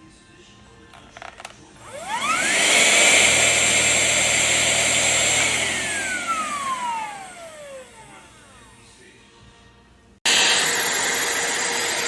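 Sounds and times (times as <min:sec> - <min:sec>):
handheld vacuum motor whine: 0:01.8 - 0:08.4, 0:10.3 - 0:12.0.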